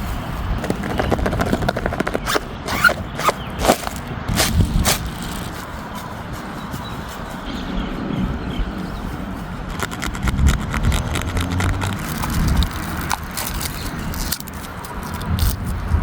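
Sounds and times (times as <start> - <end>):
packaging rustling and crinkling: 0.6 - 5.7.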